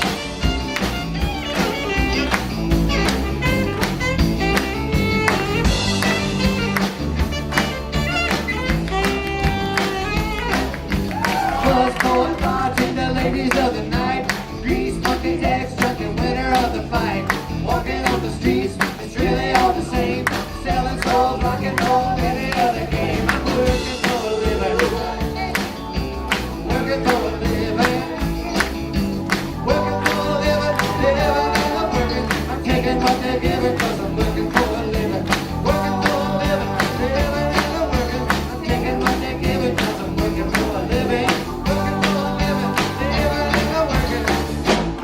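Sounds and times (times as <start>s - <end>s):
live rock band playing: 0.0s - 45.0s
steady drum beat: 0.0s - 45.0s.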